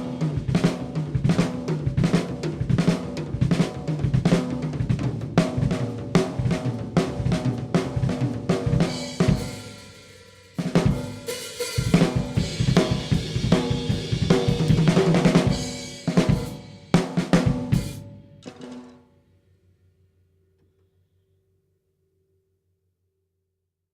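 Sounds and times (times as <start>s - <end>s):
drum kit playing grooves and fills: 0.0s - 19.1s.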